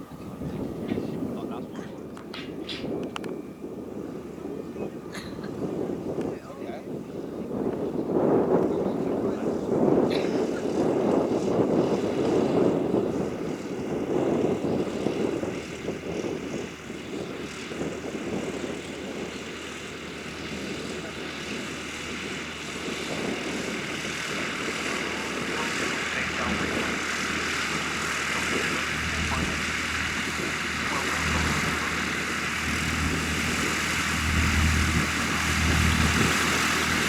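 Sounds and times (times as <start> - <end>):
propeller aircraft engine running: 0.0 - 37.0.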